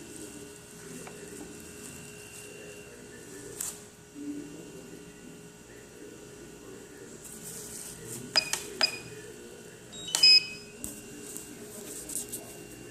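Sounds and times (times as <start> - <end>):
short high electronic beeps: 10.0 - 10.8.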